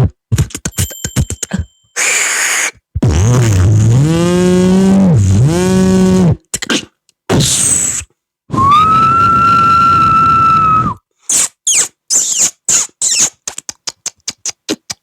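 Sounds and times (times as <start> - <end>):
high whistle-like tone: 8.5 - 11.0.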